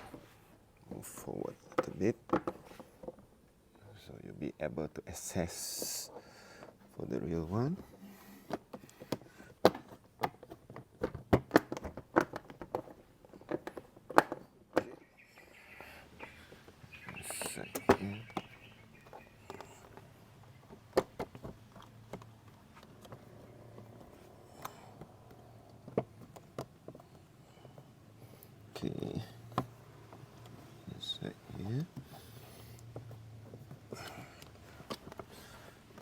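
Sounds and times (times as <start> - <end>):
plastic trim clicks and knocks: 8.5 - 15.0
squeaky scraping on plastic: 11.8 - 36.0.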